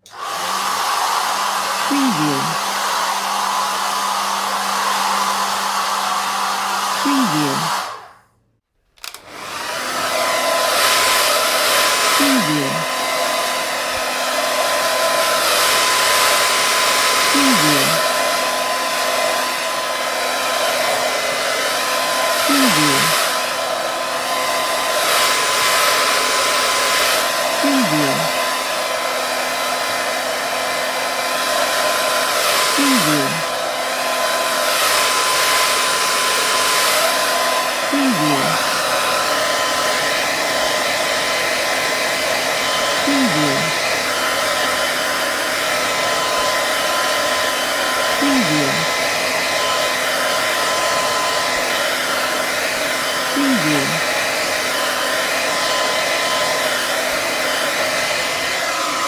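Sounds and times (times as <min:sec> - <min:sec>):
hair dryer blowing: 0:00.0 - 0:08.2, 0:09.0 - 0:59.0.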